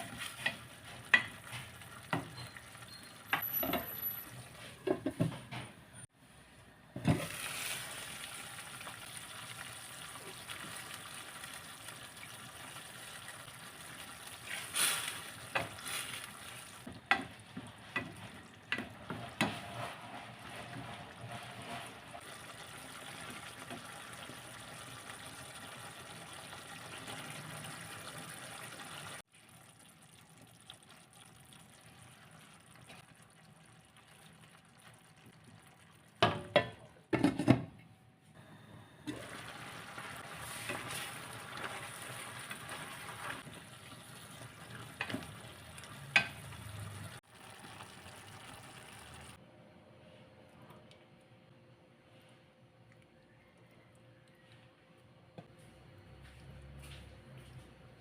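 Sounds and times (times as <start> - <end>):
food sizzling in a pan: 7.2 - 17.4, 39.1 - 49.4.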